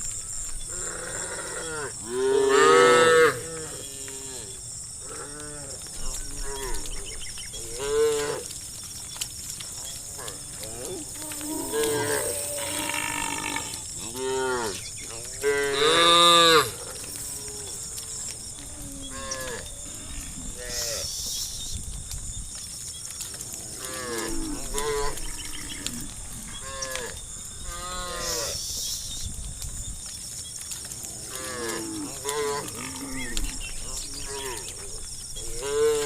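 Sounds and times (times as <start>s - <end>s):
cows mooing: 0.7s - 6.9s, 10.1s - 21.1s, 23.6s - 28.6s.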